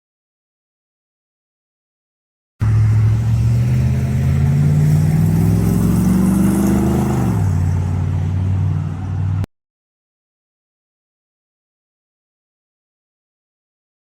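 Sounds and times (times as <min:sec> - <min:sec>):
car engine starting and revving: 0:02.6 - 0:09.5.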